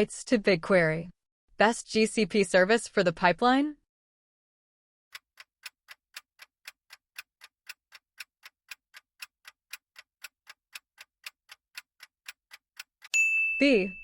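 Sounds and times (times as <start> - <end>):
clock ticking: 5.1 - 13.1.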